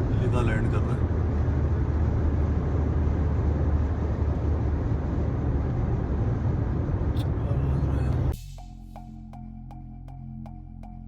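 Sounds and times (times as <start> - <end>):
vehicle rumbling: 0.0 - 11.0.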